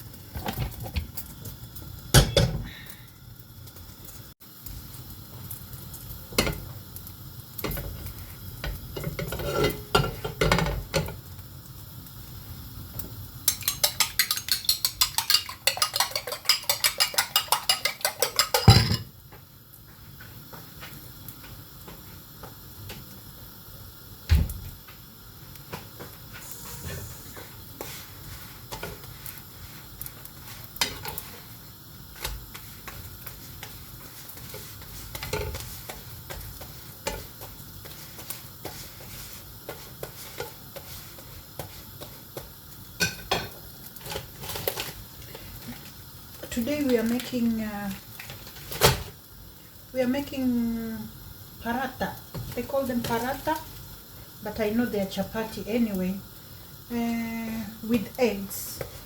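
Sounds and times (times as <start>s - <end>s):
whisk beating in a bowl: 13.4s - 19.0s
utensils and dishes clinking: 13.5s - 19.1s.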